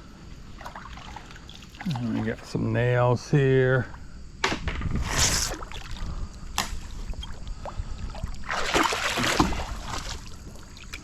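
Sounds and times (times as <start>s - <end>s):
river water splashing: 8.1s - 11.0s.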